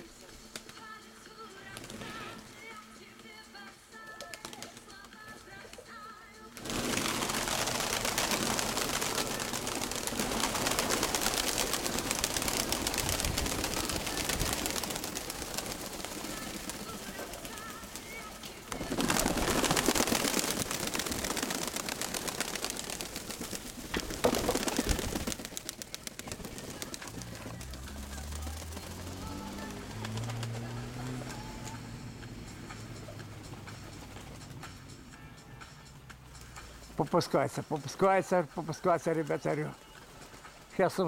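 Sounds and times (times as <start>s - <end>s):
pigeons cooing: 6.7s - 27.5s
steady rushing noise: 6.9s - 17.4s.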